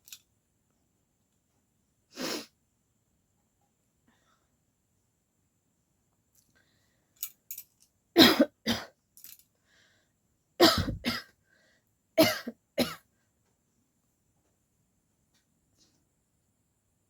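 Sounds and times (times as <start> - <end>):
woman coughing: 8.2 - 8.9, 10.6 - 11.3, 12.2 - 13.0.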